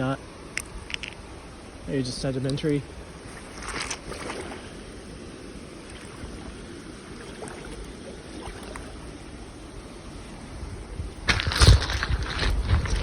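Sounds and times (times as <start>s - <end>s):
creek water running: 0.0s - 13.0s
rustling scrape: 3.3s - 4.4s, 11.3s - 13.0s.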